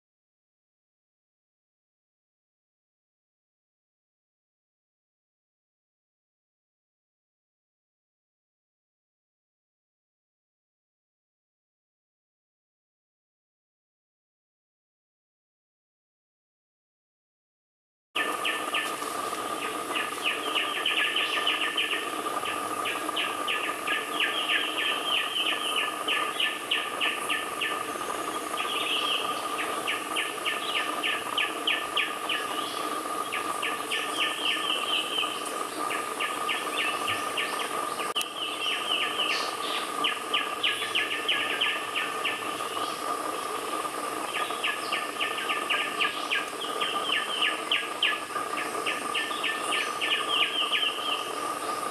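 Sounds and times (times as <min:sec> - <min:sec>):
bird chicks begging chirps: 0:18.2 - 0:43.1
steady high hum: 0:18.2 - 0:51.9.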